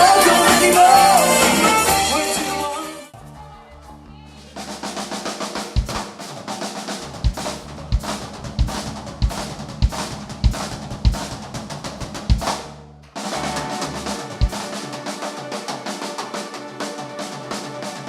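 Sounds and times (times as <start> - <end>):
snare and cymbal strokes: 4.6 - 18.0
bass drum hits: 5.8 - 6.0, 7.1 - 14.6.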